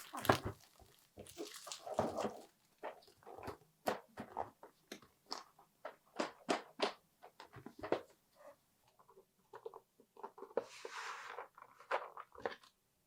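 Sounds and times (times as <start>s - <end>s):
package contents clicking and crinkling: 0.0s - 3.2s.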